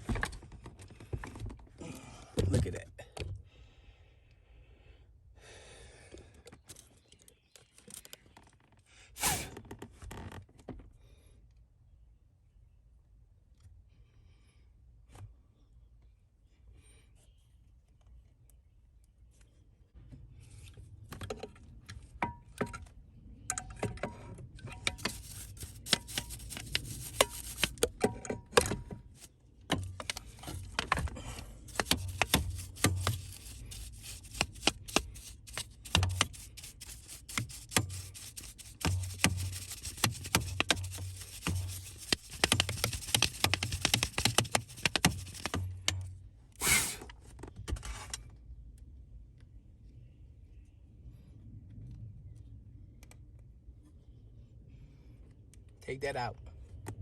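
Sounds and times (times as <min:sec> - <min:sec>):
handling plastic and metal parts: 0:23.5 - 0:46.2.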